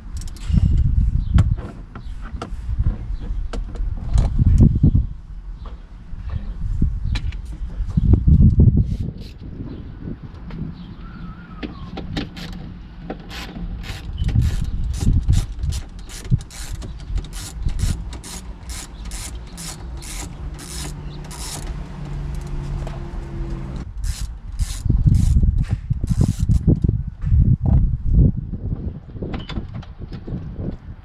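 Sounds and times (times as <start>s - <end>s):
hand ratchet clicking: 13.3s - 26.9s.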